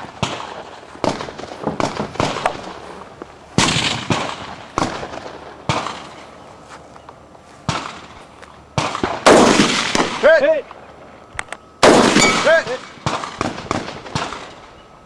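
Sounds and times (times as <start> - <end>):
rifle shots with echo: 0.0 - 2.8, 3.6 - 6.2, 7.7 - 8.2, 8.8 - 10.5, 11.8 - 14.7.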